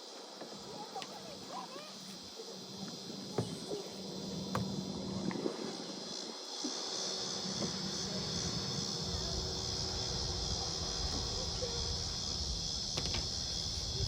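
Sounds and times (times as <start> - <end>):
crickets trilling: 0.0 - 14.0
low rumble: 7.1 - 14.0.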